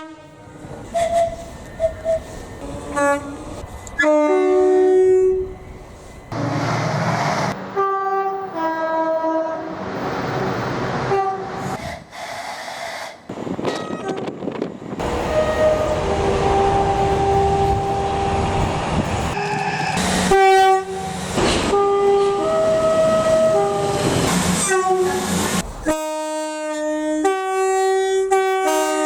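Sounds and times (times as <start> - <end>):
train horn playing a tune: 0.0 - 2.0, 2.7 - 5.6, 7.8 - 9.7, 11.1 - 11.6, 15.0 - 18.6, 19.4 - 25.2, 25.8 - 29.0
train rumble: 0.0 - 29.0.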